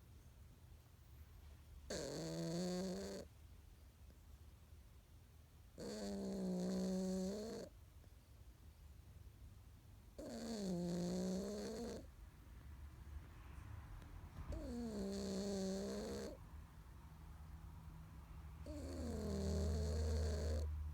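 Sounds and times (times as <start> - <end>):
cat snoring: 1.9 - 3.3, 5.8 - 7.7, 10.2 - 12.1, 14.5 - 16.4, 18.6 - 20.8.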